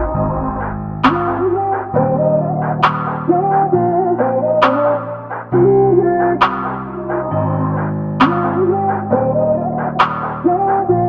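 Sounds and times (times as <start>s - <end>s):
sharp percussive hit: 0.0s - 2.1s
synth and keyboard music: 0.0s - 11.0s.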